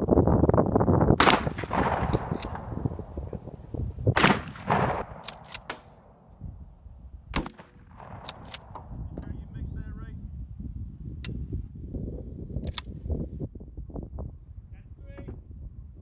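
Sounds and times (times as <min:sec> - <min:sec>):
gunshots: 0:01.2 - 0:03.2, 0:04.1 - 0:06.4, 0:07.3 - 0:09.0.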